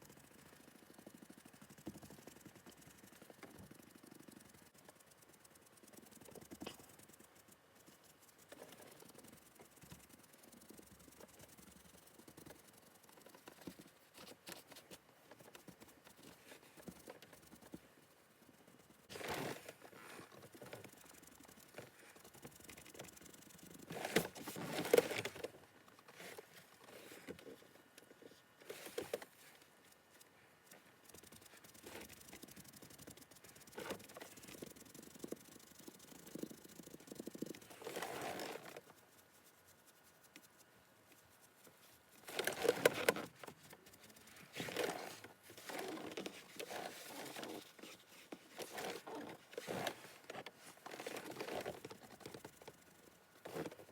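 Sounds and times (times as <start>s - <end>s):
rustling: 0.2s - 53.9s
sponge dabbing on leather: 29.9s - 53.8s.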